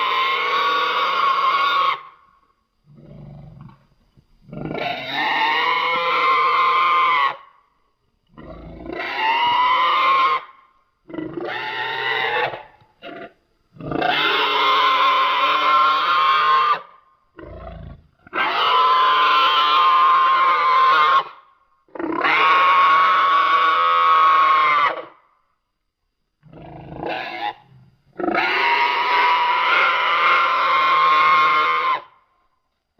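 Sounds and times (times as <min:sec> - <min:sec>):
harsh creature bellowing calls: 0:08.4 - 0:25.2, 0:26.5 - 0:32.2.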